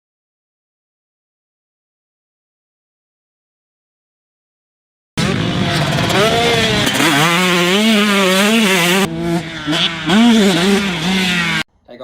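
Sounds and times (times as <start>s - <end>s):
motorcycle engine revving: 5.2s - 11.7s.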